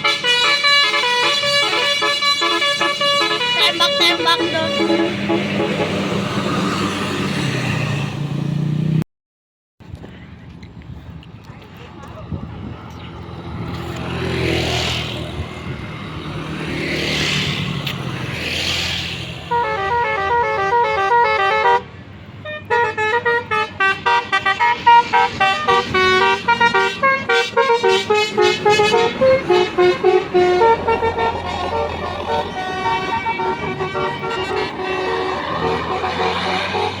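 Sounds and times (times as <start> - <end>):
bus air horn melody: 0.0 - 6.4, 19.4 - 37.0.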